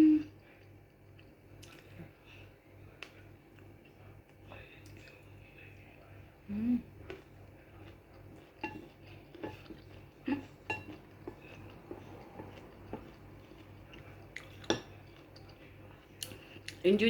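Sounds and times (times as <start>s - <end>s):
low steady hum: 0.0s - 17.0s
utensils clinking against dish: 10.6s - 11.6s.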